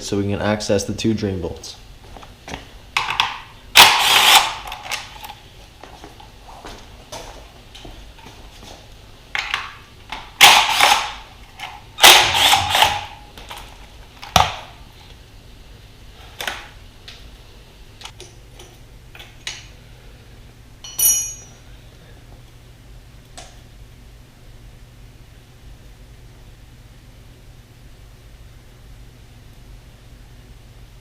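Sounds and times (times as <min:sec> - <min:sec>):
ringing metal clink: 0:20.8 - 0:21.6
tools and bolts clattering: 0:20.8 - 0:21.6.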